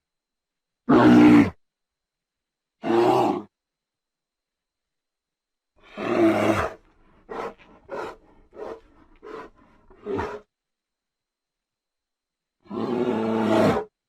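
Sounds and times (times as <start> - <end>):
bear growls: 0.9 - 1.6, 2.8 - 3.5, 5.8 - 10.5, 12.6 - 13.9
bear roaring: 0.9 - 1.6, 2.8 - 3.5, 5.8 - 10.4, 12.6 - 13.9.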